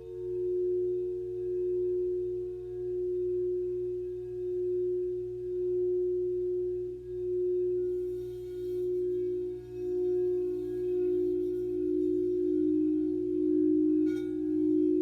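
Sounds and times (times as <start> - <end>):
lower singing bowl tone: 0.0 - 15.0
singing bowl tone: 0.0 - 15.0.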